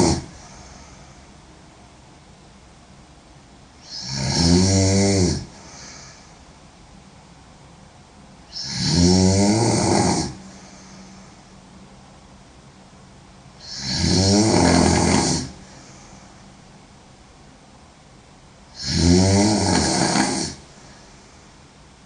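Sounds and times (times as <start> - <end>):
woman snoring: 0.0 - 0.8, 3.8 - 6.2, 8.5 - 11.2, 13.6 - 15.9, 18.7 - 20.7.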